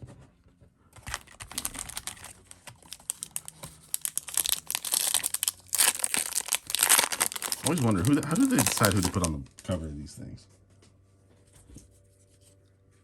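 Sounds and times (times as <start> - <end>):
plastic wrapper crinkling and tearing: 1.0 - 9.4.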